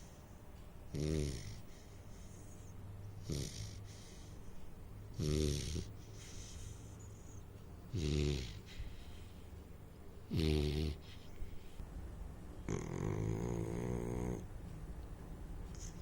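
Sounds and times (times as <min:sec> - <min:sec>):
puppy snoring: 0:00.9 - 0:04.3, 0:05.1 - 0:09.4, 0:10.2 - 0:11.8, 0:12.6 - 0:14.5.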